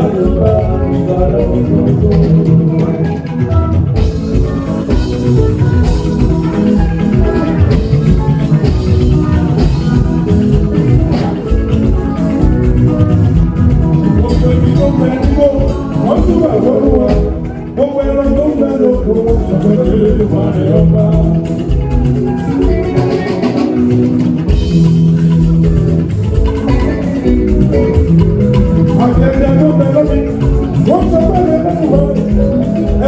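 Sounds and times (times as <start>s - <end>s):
band music with percussion and strings: 0.0s - 33.0s.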